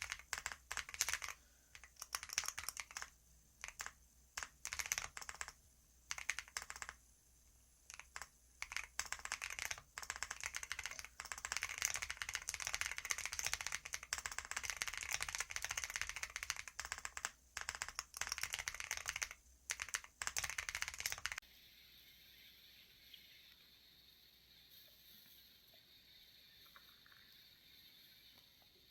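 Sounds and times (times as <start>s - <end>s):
computer keyboard typing: 0.0s - 7.0s, 7.9s - 21.4s
faint steady background noise: 0.0s - 28.9s.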